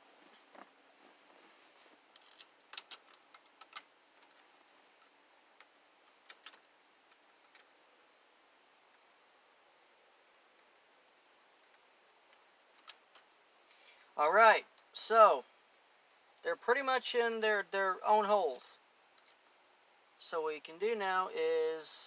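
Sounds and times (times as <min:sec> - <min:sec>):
small metal parts clicking: 0:02.1 - 0:04.4, 0:05.0 - 0:07.7, 0:11.7 - 0:13.3, 0:19.2 - 0:19.4.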